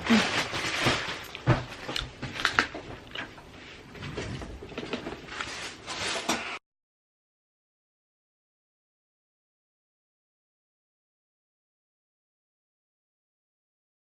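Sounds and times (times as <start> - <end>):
rustling: 0.0 - 6.6.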